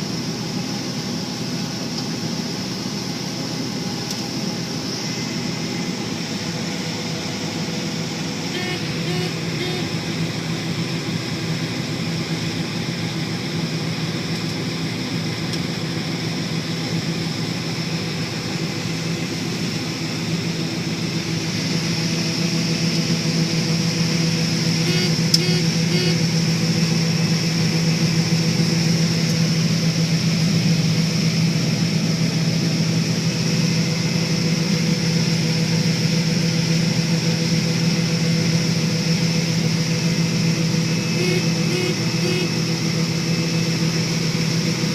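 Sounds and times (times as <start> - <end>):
combine harvester drone with whine: 0.0 - 44.9
beeps: 24.9 - 26.2.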